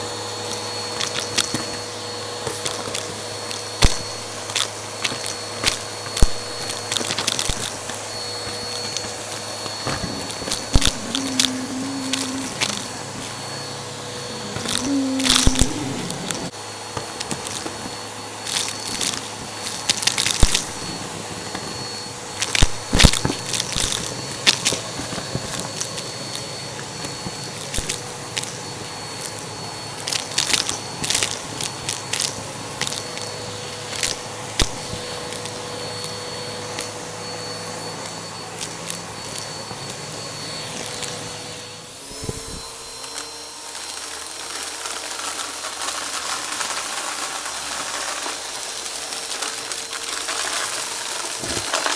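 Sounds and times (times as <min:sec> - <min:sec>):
vacuum cleaner whine: 0:00.0 - 0:51.9
debris crackling crunches: 0:09.9 - 0:13.6.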